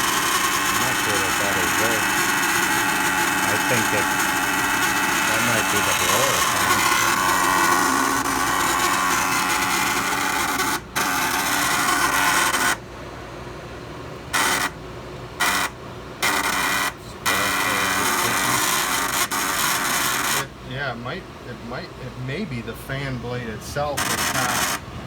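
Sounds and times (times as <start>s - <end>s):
furnace fan rasping rattle: 0.0s - 13.1s, 14.2s - 25.0s.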